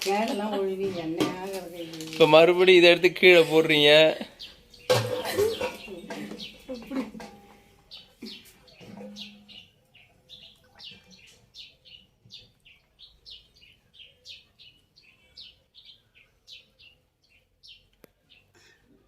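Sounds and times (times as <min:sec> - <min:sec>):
small bird chirping: 0:04.2 - 0:18.8.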